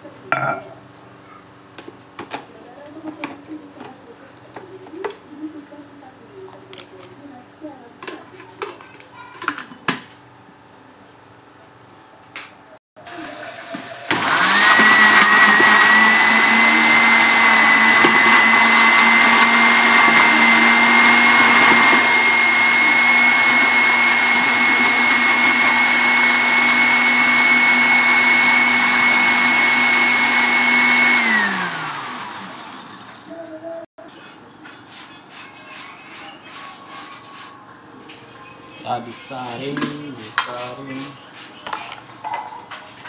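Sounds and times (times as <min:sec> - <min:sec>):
electric blender running: 0:13.1 - 0:33.4.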